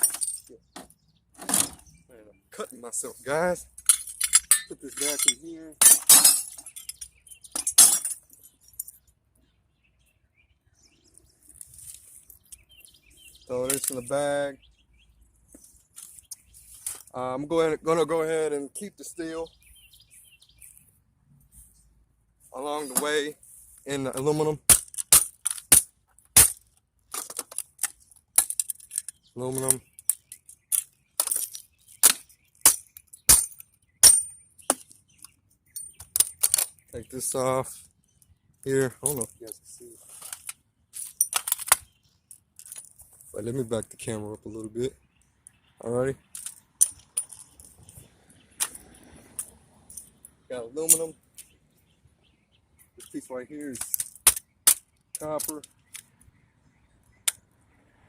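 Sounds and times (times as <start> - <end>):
computer parts clattering: 3.8 - 9.0, 24.2 - 34.9.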